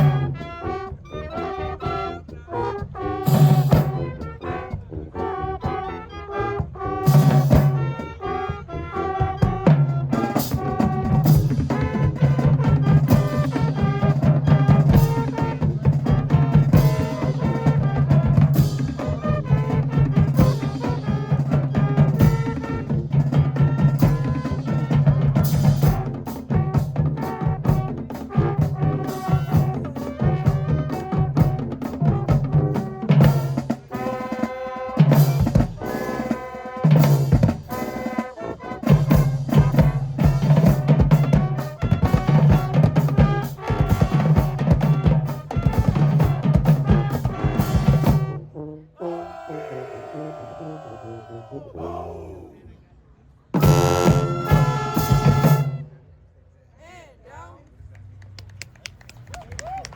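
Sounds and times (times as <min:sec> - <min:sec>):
brass chords: 0:00.0 - 0:52.1, 0:53.6 - 0:56.2
drumline fast beat: 0:02.2 - 0:04.8, 0:06.6 - 0:08.1, 0:09.3 - 0:48.4, 0:53.6 - 0:55.8.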